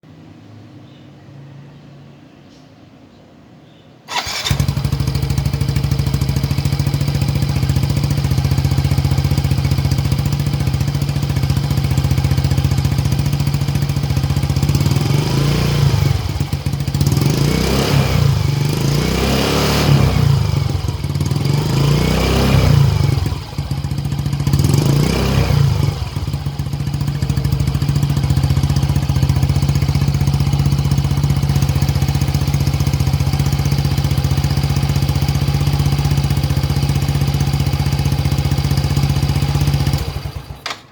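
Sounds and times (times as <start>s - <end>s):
scooter throttle blips: 4.1s - 17.3s, 19.9s - 40.9s
scooter engine idling: 4.1s - 40.9s.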